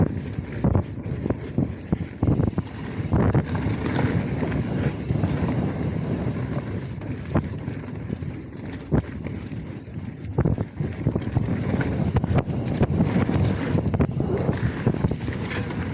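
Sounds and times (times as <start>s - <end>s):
mountain bike rolling on dirt: 0.0s - 15.9s
wind buffeting microphone: 0.0s - 15.9s
bike knocks and rattles: 2.2s - 7.6s, 10.5s - 15.9s.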